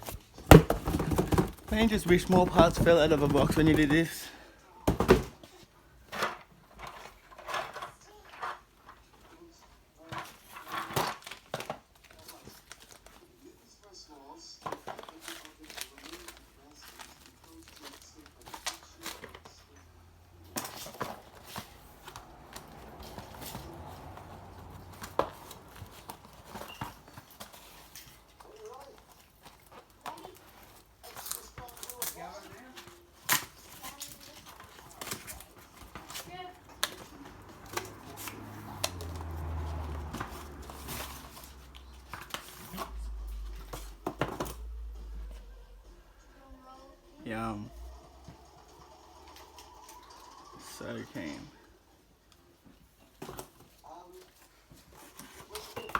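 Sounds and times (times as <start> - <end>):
car parts clicking and knocking: 0.0 - 4.1
packaging rustling: 0.0 - 4.3, 14.7 - 19.3
wrapping crinkling and rustling: 0.0 - 4.4, 5.4 - 19.7, 20.6 - 45.5, 52.8 - 55.9.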